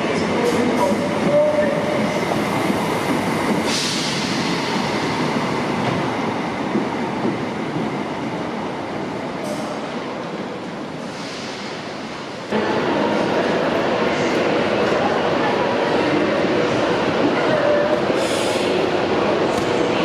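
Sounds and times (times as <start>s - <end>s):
train wheels running on track: 0.0s - 13.8s.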